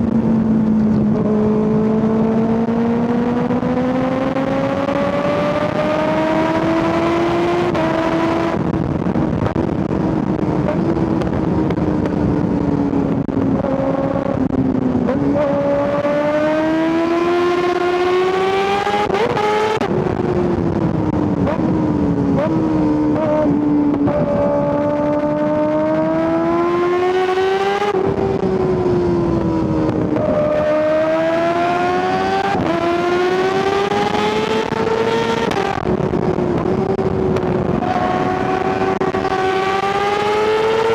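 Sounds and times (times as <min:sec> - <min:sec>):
motorcycle engine accelerating: 0:00.0 - 0:40.9.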